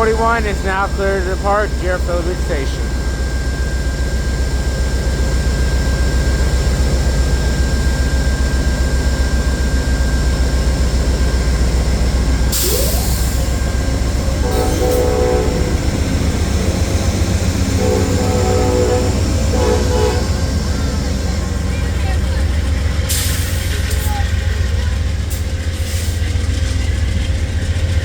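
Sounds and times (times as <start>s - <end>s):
diesel locomotive engine rumble: 0.0s - 28.0s
train horn: 14.3s - 16.4s, 17.7s - 20.8s.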